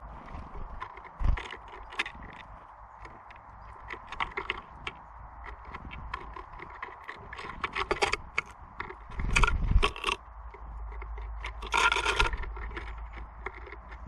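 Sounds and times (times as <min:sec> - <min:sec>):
birds pecking and scratching on wood: 0:00.0 - 0:14.0.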